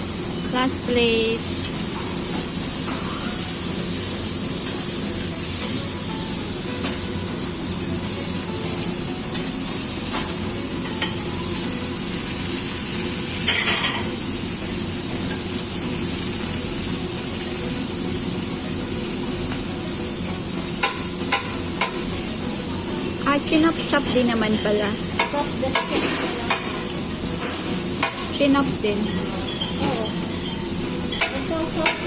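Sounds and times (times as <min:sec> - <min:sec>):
food sizzling in a wok: 0:00.0 - 0:32.0
utensils clicking on pan: 0:09.3 - 0:11.7, 0:12.6 - 0:14.2, 0:20.3 - 0:22.4, 0:23.0 - 0:32.0.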